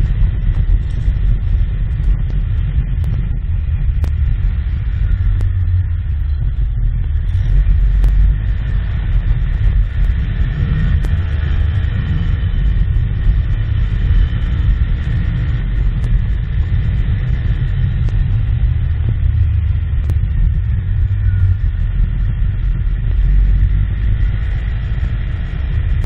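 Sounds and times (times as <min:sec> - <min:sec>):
engine low rumble: 0:00.0 - 0:26.0.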